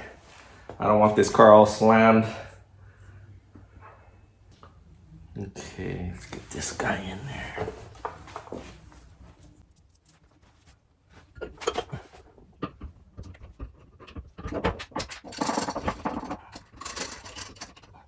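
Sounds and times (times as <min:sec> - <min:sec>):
metallic knocks and scraping: 0:11.2 - 0:18.0.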